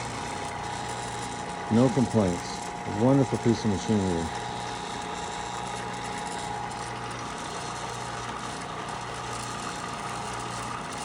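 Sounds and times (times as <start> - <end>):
drill press motor hum: 0.0 - 11.0.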